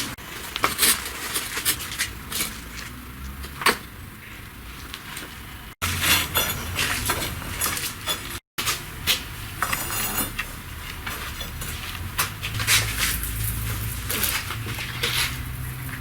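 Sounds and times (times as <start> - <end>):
masonry tools clinking on bricks: 5.9 - 8.4, 9.1 - 15.9.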